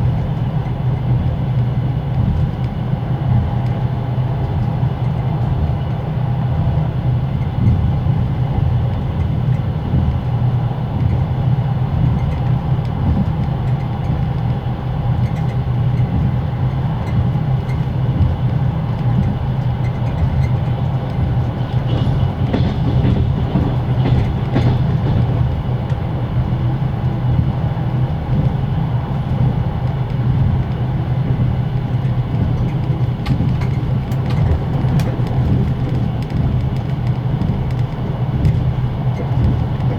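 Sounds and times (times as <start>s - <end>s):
low train carriage rumble: 0.0s - 39.9s
wheels clattering: 27.4s - 39.9s.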